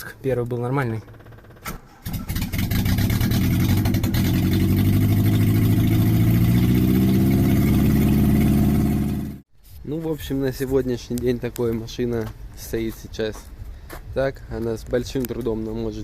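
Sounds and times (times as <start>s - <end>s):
car engine misfiring: 0.9s - 9.4s.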